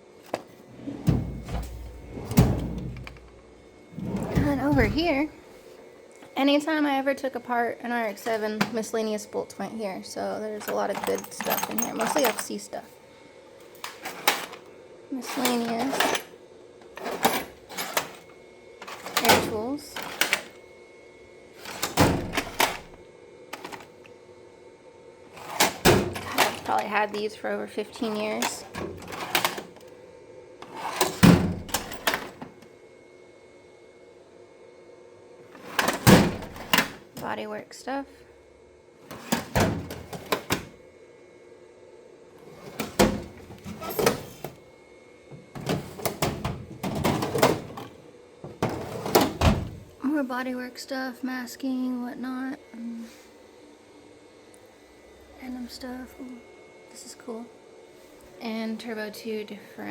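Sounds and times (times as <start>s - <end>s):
toolbox drawer handled: 0.3s - 3.4s, 4.0s - 5.3s, 10.6s - 12.6s, 13.8s - 14.6s, 15.2s - 16.3s, 17.0s - 20.5s, 21.6s - 23.0s, 23.6s - 23.9s, 25.4s - 26.9s, 28.0s - 29.8s, 30.6s - 32.5s, 35.6s - 37.0s, 39.1s - 40.7s, 42.6s - 44.6s, 45.6s - 49.9s.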